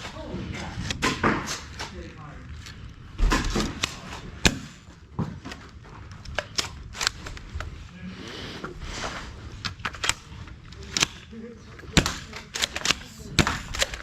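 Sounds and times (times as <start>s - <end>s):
foam darts striking: 3.2s - 4.8s, 11.9s - 14.0s
toy blasters clicking and firing: 6.2s - 7.8s, 9.6s - 14.0s.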